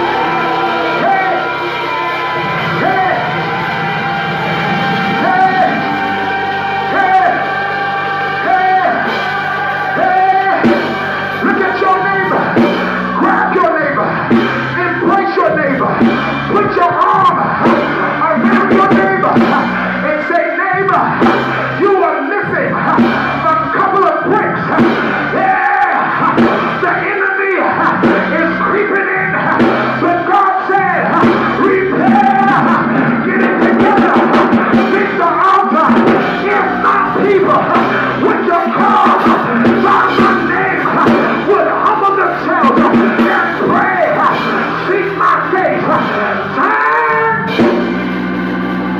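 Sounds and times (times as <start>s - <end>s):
crowd shouting and singing: 0.0s - 48.9s
live band music: 0.0s - 48.9s
person singing or calling: 35.0s - 47.5s.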